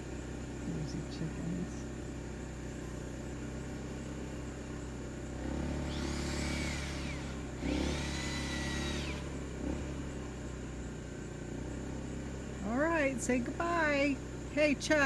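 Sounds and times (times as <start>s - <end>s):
steady low hum: 0.0s - 15.0s
small electric motor whining: 5.3s - 10.2s.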